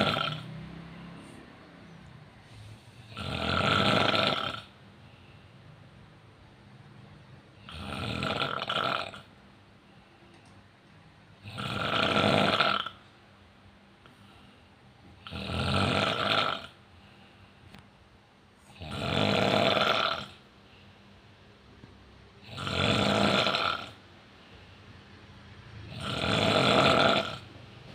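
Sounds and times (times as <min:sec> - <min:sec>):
man snoring: 0:00.0 - 0:01.2, 0:03.0 - 0:04.8, 0:07.6 - 0:09.3, 0:11.4 - 0:13.0, 0:15.2 - 0:16.8, 0:18.7 - 0:20.4, 0:22.4 - 0:24.0, 0:25.9 - 0:27.6.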